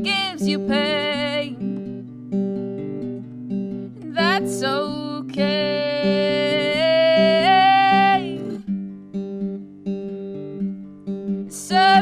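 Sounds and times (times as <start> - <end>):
person singing: 0.0 - 1.6, 4.0 - 8.6, 11.5 - 12.0
acoustic guitar strumming: 0.0 - 12.0.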